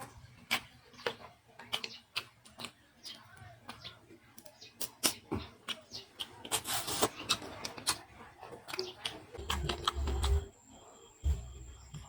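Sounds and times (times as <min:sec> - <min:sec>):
chewing and lip smacking: 0:00.3 - 0:04.0, 0:04.6 - 0:10.5.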